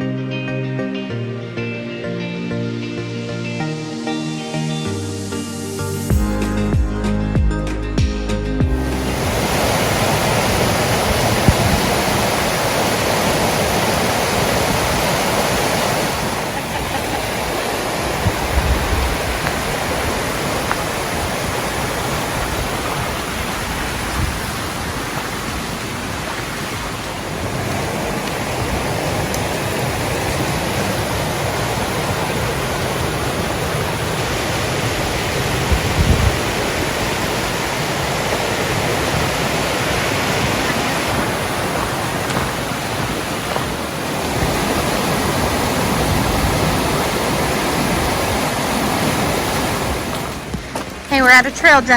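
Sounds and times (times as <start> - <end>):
low thumps: 6.1 - 9.4
river rushing over rocks: 8.7 - 51.9.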